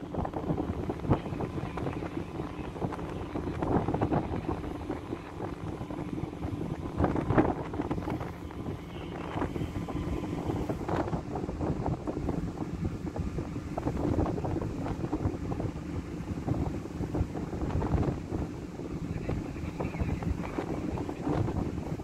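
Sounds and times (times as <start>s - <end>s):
ship engine rumble: 0.0s - 22.0s
wind buffeting microphone: 0.0s - 22.0s.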